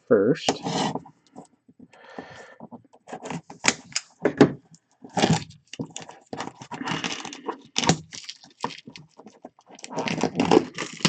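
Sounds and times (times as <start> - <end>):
plastic shrink-wrap tearing and crinkling: 5.1 - 11.0.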